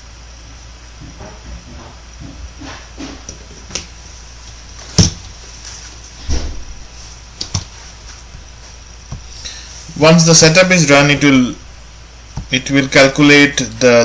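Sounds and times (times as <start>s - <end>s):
low hum and hiss: 0.0s - 14.0s
sharp clicks and knocks: 7.4s - 7.7s.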